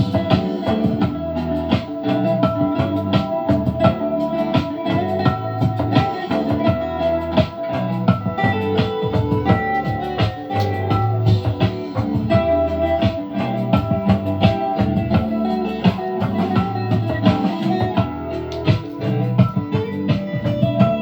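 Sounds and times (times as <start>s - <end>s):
guitar music with drum beat: 0.0s - 21.0s.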